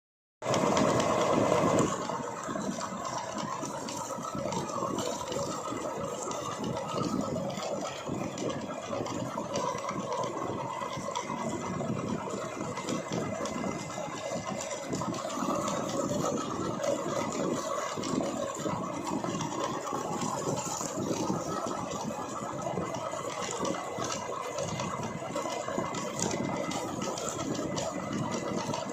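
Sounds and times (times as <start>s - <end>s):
electric meat grinder running: 0.4s - 28.9s.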